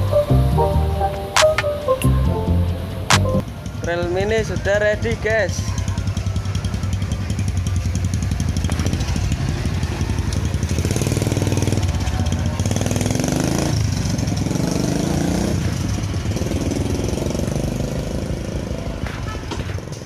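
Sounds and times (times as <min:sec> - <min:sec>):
motorcycle engine revving: 0:03.4 - 0:19.1.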